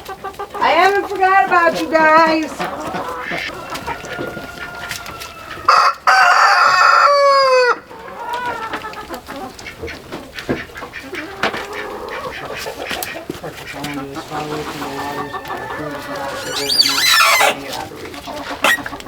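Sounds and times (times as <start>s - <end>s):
hens clucking: 0.0s - 19.0s
rooster crowing: 2.1s - 8.7s, 14.7s - 17.7s.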